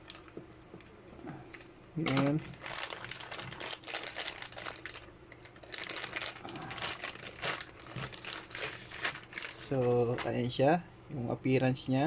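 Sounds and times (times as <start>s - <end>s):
packaging crinkling: 0.0s - 0.4s, 2.0s - 10.4s.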